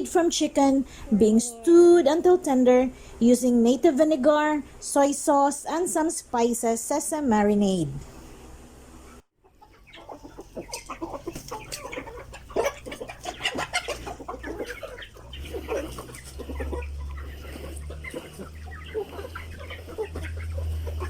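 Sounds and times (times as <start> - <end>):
chickens clucking: 0.0 - 3.0, 9.0 - 21.0.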